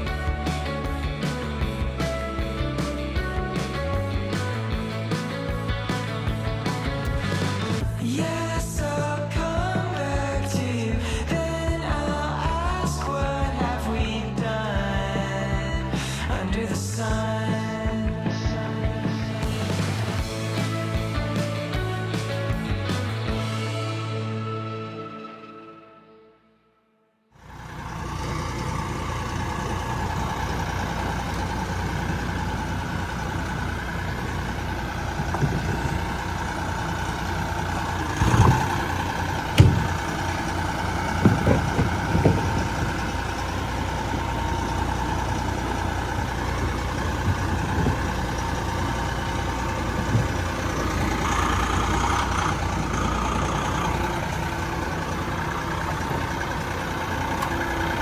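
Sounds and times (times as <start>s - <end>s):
stump grinder running: 27.4s - 58.0s
sharp knocks: 39.6s - 40.3s.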